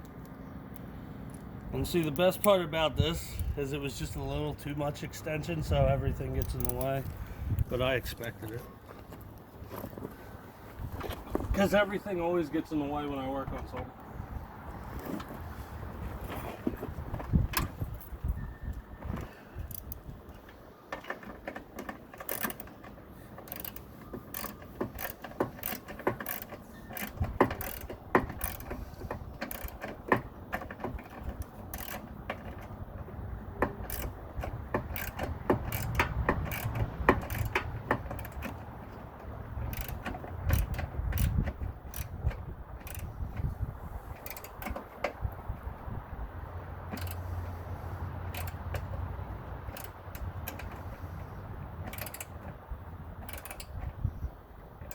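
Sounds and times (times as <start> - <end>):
socket ratchet clicking: 21.0 - 32.7, 33.6 - 43.5, 44.2 - 45.4, 46.9 - 47.3, 48.3 - 49.0, 49.6 - 51.0, 51.8 - 52.6, 53.2 - 54.1.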